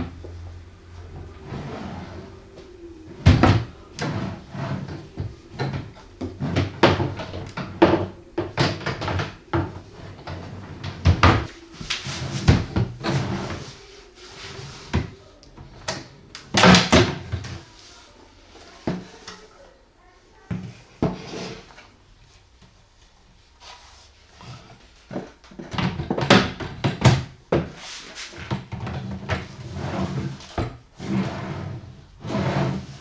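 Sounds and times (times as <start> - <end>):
wooden cabinet doors opening and shutting: 1.0 - 13.8, 14.6 - 17.7
cabinet doors banging together: 3.2 - 9.8, 10.9 - 11.5.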